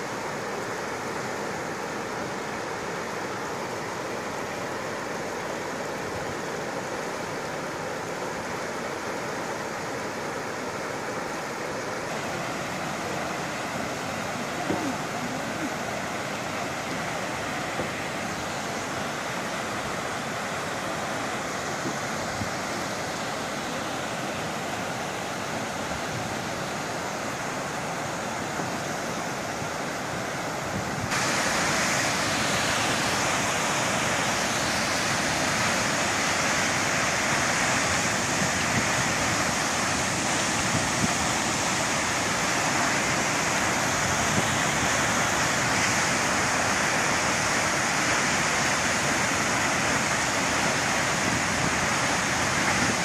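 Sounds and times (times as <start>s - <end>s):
waterfall rushing: 0.0s - 53.0s.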